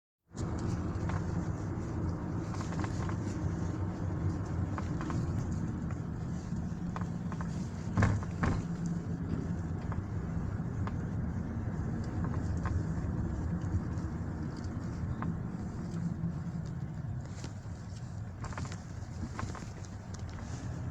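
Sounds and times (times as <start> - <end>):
road and engine noise: 0.2 - 20.9
dashboard knocking and rattling: 7.0 - 10.2.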